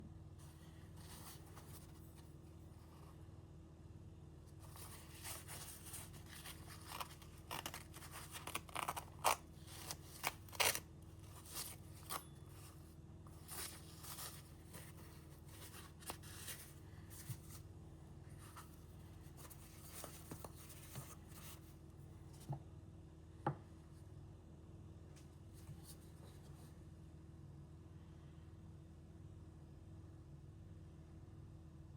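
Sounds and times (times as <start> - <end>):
low steady hum: 0.0 - 31.9
knife blade scraping: 6.9 - 12.8.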